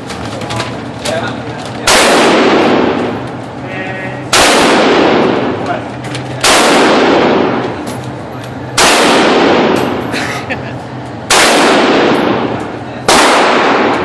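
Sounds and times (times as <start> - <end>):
gunshots with echoing tail: 1.8 - 3.3, 4.3 - 5.6, 6.4 - 7.8, 8.7 - 10.1, 11.2 - 14.0.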